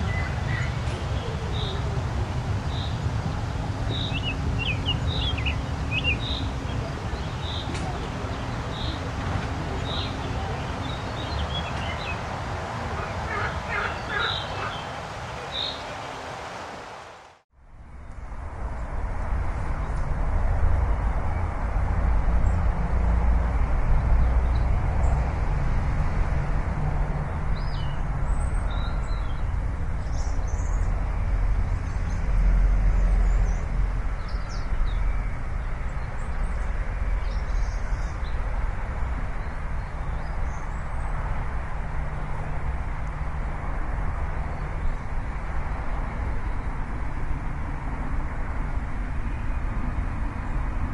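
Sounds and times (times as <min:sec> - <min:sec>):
heavy low rumble: 0:00.0 - 0:16.6
birds chirping: 0:00.0 - 0:17.4
steady rush: 0:00.0 - 0:17.4.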